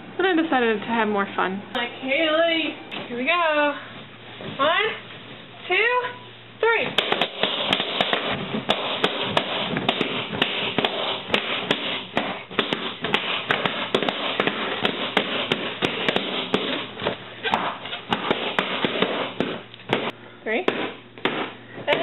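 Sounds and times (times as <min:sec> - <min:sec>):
balloons popping: 0:06.9 - 0:22.0.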